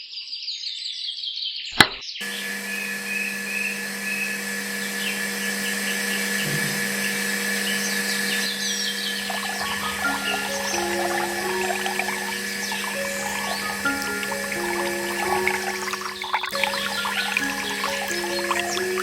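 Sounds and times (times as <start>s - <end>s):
click: 1.8s - 2.0s
small electric motor humming: 2.2s - 19.0s.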